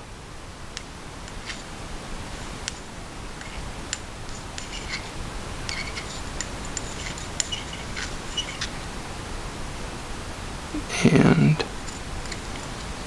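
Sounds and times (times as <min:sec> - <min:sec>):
steady hiss: 0:00.0 - 0:13.0
knife parts clicking and tapping: 0:05.7 - 0:08.8.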